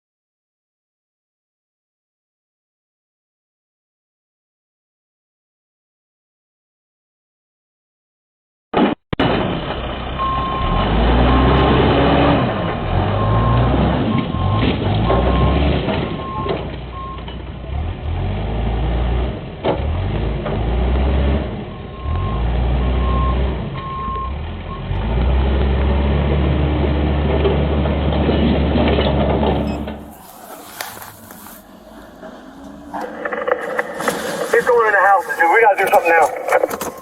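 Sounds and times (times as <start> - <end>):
diesel engine revving: 9.2 - 36.2
backup alarm beeping: 29.4 - 30.2, 30.9 - 37.0.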